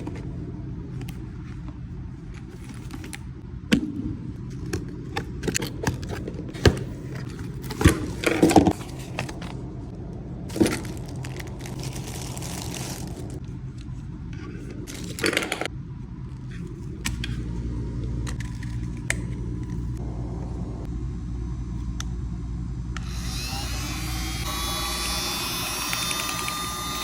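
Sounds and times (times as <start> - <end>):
handheld vacuum humming: 23.0 - 27.0.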